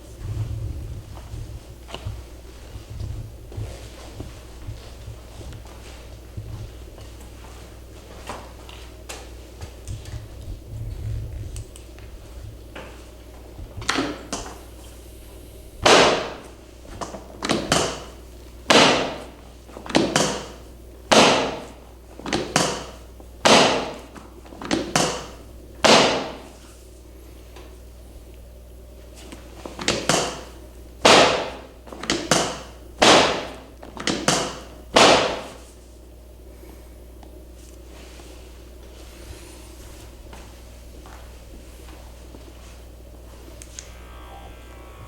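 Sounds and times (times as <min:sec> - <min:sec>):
sharp knocks or slaps: 0:15.8 - 0:18.1, 0:18.7 - 0:19.3, 0:19.9 - 0:24.1, 0:24.7 - 0:26.5, 0:31.0 - 0:35.6.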